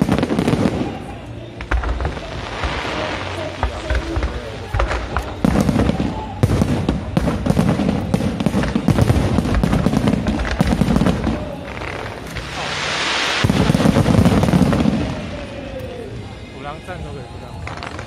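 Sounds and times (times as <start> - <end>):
fireworks bangs and crackling: 0.0 - 18.0
rushing hiss: 11.8 - 15.6.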